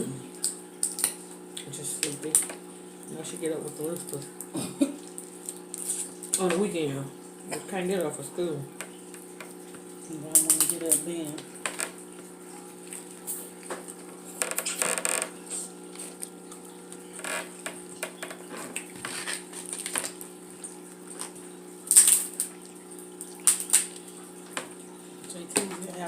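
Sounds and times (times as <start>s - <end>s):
chewing: 4.2s - 6.4s.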